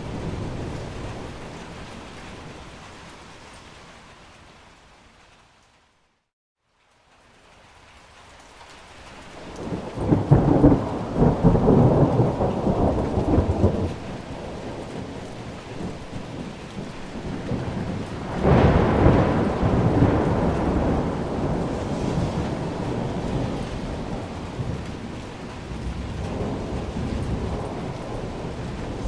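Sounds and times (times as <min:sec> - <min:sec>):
thunder rumbling: 0:00.0 - 0:02.7, 0:09.4 - 0:29.0
rain hissing: 0:07.0 - 0:29.0
sharp thunderclap: 0:09.6 - 0:29.0.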